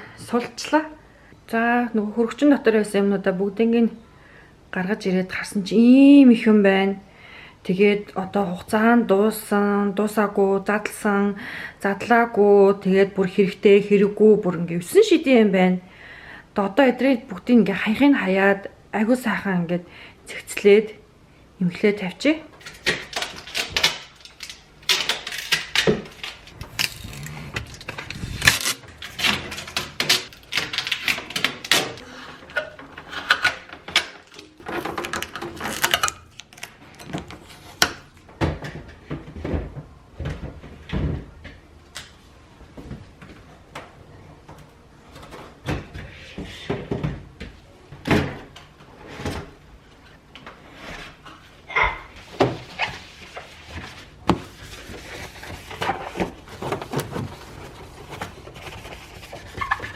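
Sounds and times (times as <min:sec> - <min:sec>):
fridge drawers and containers clattering: 0:24.8 - 0:37.7, 0:53.6 - 0:59.9
rustling: 0:52.2 - 0:59.9.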